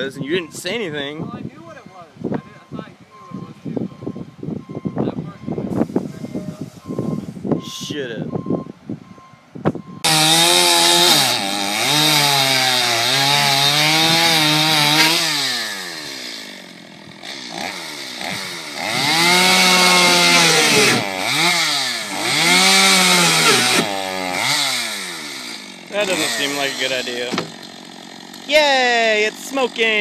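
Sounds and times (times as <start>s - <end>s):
chainsaw revving: 10.0s - 30.0s.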